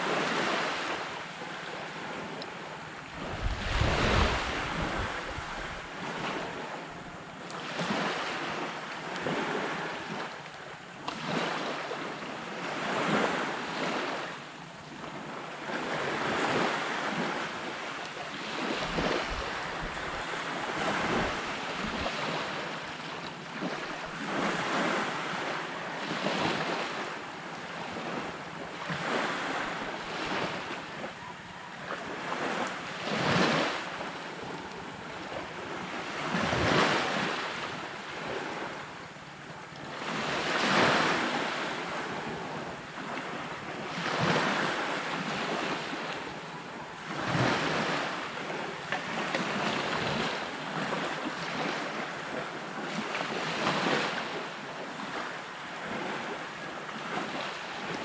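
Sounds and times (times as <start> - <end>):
waves breaking on beach: 0.0 - 58.0
wind rumbling on microphone: 3.0 - 7.1, 15.7 - 25.4.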